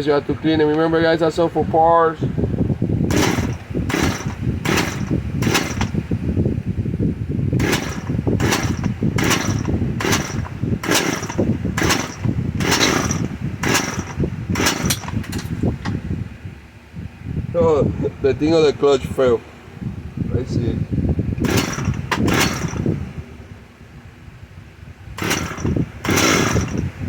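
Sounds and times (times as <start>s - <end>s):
chainsaw pull-start bursts: 3.1s - 6.2s, 7.6s - 15.9s, 21.4s - 23.1s, 25.2s - 27.0s.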